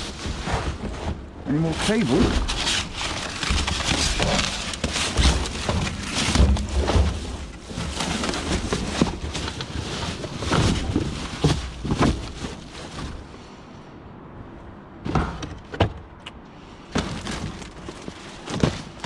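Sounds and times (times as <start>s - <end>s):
low microphone rumble: 0.0s - 13.3s
rubbish clattering and rustling: 0.0s - 13.4s, 15.0s - 16.0s, 16.8s - 19.0s.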